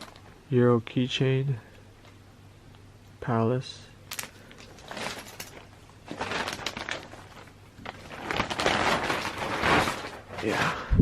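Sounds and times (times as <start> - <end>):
bag crinkling and rustling: 0.0 - 0.4, 4.1 - 10.9.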